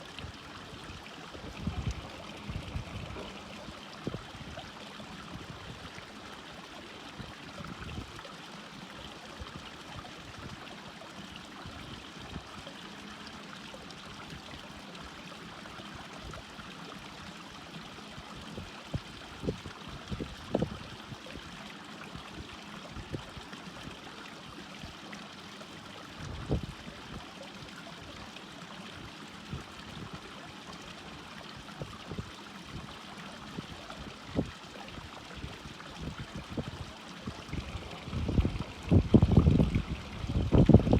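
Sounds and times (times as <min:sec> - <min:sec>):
stream water running: 0:00.0 - 0:40.9.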